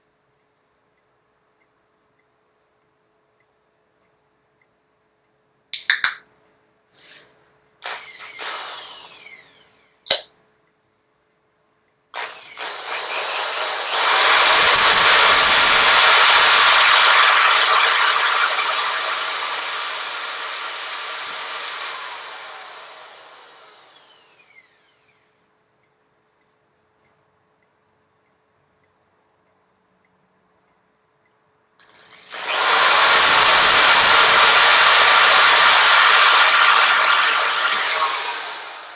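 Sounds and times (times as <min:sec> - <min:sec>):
electric drill whining: 0:07.8 - 0:09.9, 0:12.2 - 0:25.2, 0:31.8 - 0:38.9.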